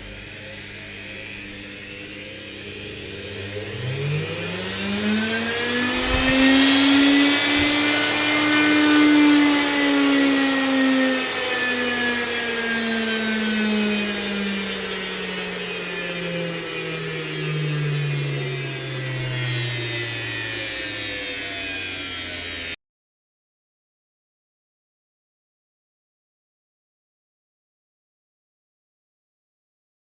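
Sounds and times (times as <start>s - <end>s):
motor whine rising and falling: 0.0s - 22.8s
motor brush hiss: 5.6s - 9.7s.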